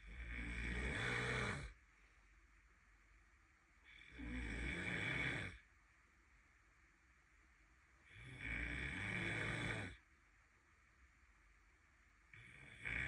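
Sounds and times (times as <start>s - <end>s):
person snoring: 0.0s - 1.8s, 3.8s - 5.6s, 8.1s - 10.0s, 12.3s - 13.0s.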